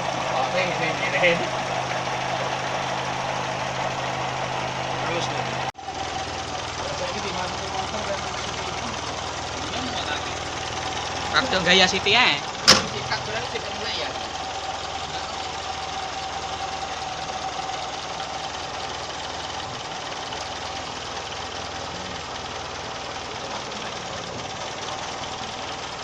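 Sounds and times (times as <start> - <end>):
car engine idling: 0.0 - 26.0
thin steady whine: 0.0 - 26.0.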